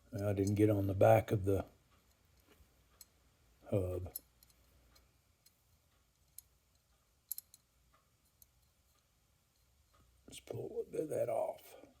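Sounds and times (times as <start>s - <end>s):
faint sharp handling clicks: 6.2s - 7.7s.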